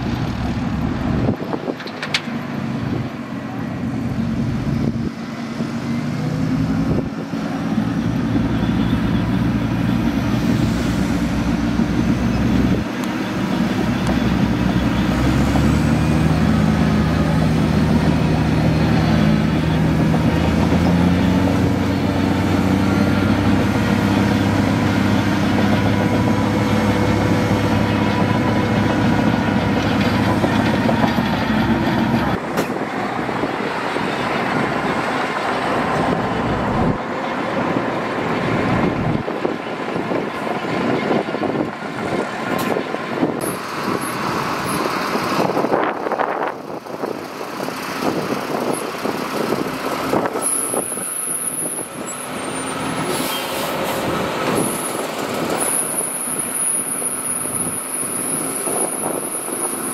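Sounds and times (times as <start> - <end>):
heavy diesel engine working: 0.0 - 59.9.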